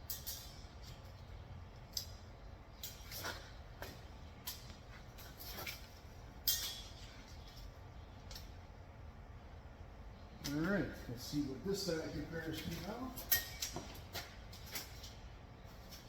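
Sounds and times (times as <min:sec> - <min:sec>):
steel frame pieces clinking: 0:00.0 - 0:01.1, 0:06.4 - 0:07.7, 0:12.5 - 0:15.2
low steady hum: 0:00.0 - 0:16.0.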